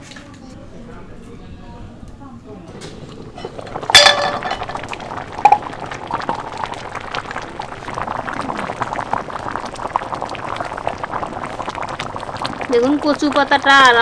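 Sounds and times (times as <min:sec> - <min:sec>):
pot bubbling at the boil: 0:01.0 - 0:14.0
ringing metal clink: 0:04.0 - 0:04.8.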